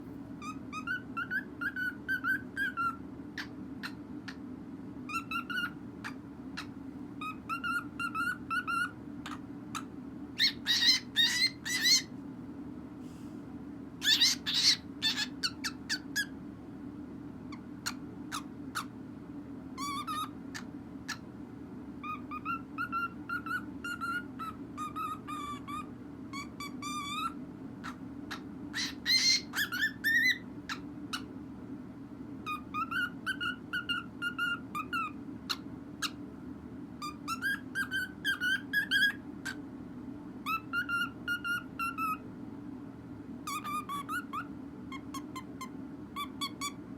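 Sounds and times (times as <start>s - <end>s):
steady low hum: 0.0s - 46.9s
cockatiel chirps: 0.4s - 4.4s, 5.1s - 12.1s, 14.0s - 16.3s, 17.5s - 18.9s, 19.8s - 21.3s, 22.0s - 31.3s, 32.4s - 36.2s, 37.0s - 39.6s, 40.4s - 42.2s, 43.5s - 46.8s
cockatiel whistling: 0.4s - 4.4s, 5.1s - 12.1s, 14.0s - 16.3s, 19.8s - 21.2s, 22.0s - 31.3s, 32.4s - 36.2s, 37.0s - 39.6s, 40.4s - 42.2s, 43.5s - 46.8s.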